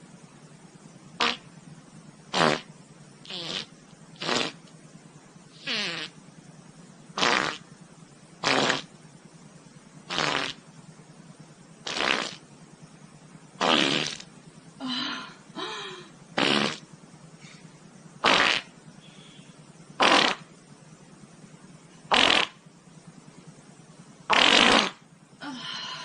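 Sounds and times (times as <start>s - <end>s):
short farts: 1.2s - 1.4s, 2.3s - 2.7s, 3.3s - 4.7s, 5.6s - 6.2s, 7.2s - 7.7s, 8.4s - 8.9s, 10.1s - 10.6s, 11.8s - 12.4s, 13.6s - 14.3s, 16.4s - 16.9s, 18.2s - 18.7s, 20.0s - 20.5s, 22.1s - 22.6s, 24.3s - 25.0s.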